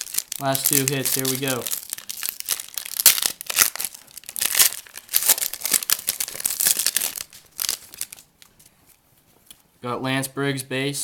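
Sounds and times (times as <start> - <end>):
wrapper being torn and crinkled: 0.0 - 8.5.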